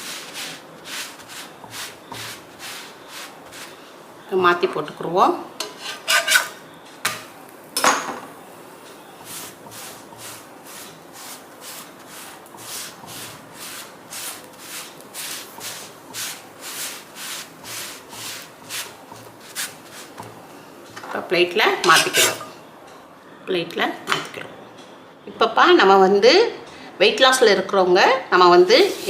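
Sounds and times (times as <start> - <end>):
cloth rubbing roti on griddle: 0.0 - 3.9, 9.1 - 20.4, 21.9 - 22.4, 28.7 - 29.0.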